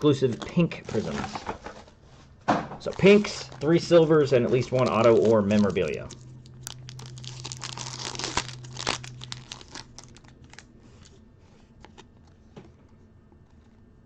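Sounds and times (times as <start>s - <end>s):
plastic wrapping crinkling and tearing: 2.8s - 12.5s.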